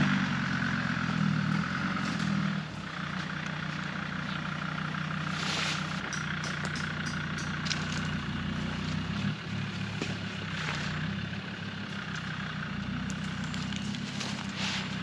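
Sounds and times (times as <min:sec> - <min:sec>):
low mechanical hum: 0:00.0 - 0:15.0
rustles and clicks: 0:05.2 - 0:11.1, 0:12.9 - 0:15.0.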